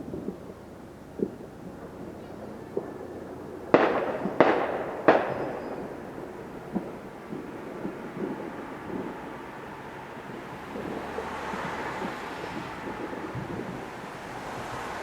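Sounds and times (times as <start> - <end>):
faint firework pops: 0.0 - 9.5
fireworks banging: 0.0 - 15.0.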